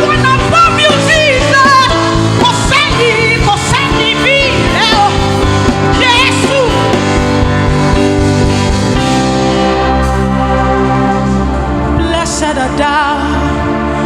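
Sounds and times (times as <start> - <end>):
woman singing gospel runs: 0.0 - 8.0
sustained keyboard chords: 0.0 - 14.0.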